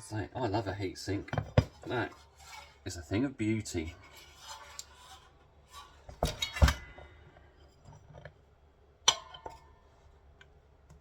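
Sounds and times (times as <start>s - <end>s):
metal parts knocking and clanking: 6.1s - 7.1s.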